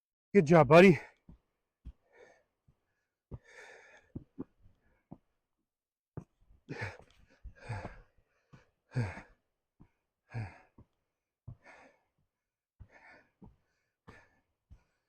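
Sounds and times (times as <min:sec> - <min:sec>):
person breathing hard: 0:03.4 - 0:04.2, 0:06.7 - 0:08.2, 0:11.5 - 0:12.1.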